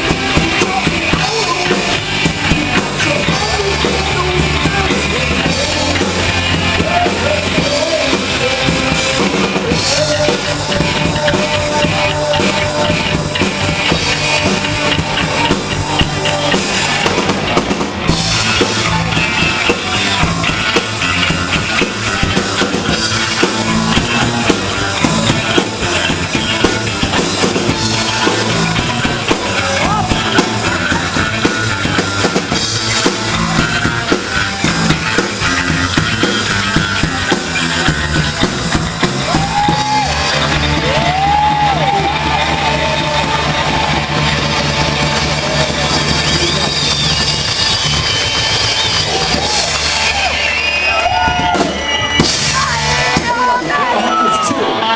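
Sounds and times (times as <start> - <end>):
live rock band playing: 0.0 - 54.9.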